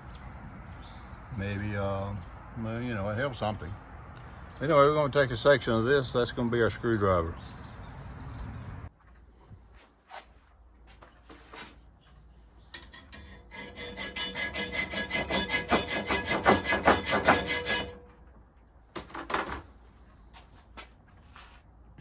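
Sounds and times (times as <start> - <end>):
metal rubbing along steel rod: 12.8 - 18.2.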